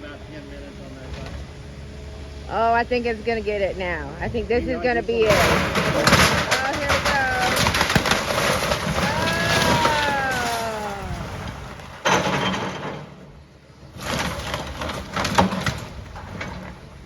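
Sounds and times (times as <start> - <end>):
building creaking: 5.1 - 17.0
falling debris crashing: 5.1 - 17.0
building crashing down: 5.2 - 16.9.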